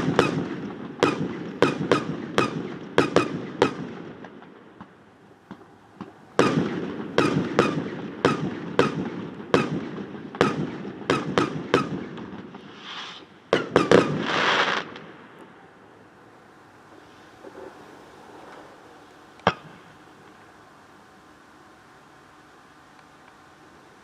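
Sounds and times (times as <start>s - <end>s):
fireworks bangs with ringing echo: 0.0s - 15.4s
hissing crackle: 12.4s - 24.0s.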